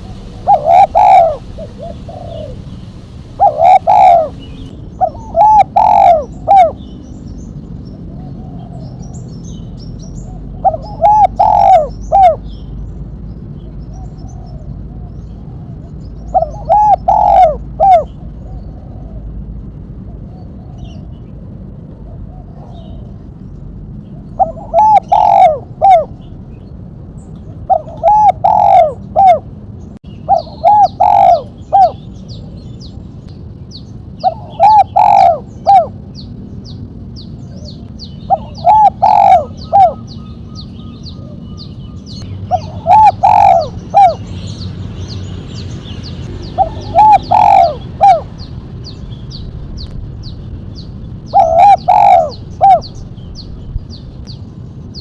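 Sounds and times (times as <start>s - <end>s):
dove cooing: 0.0s - 6.9s, 10.2s - 12.4s, 14.0s - 19.2s, 24.3s - 26.2s, 27.6s - 29.5s, 30.2s - 32.0s, 34.2s - 36.0s, 37.5s - 44.3s, 46.4s - 48.5s, 51.3s - 53.0s.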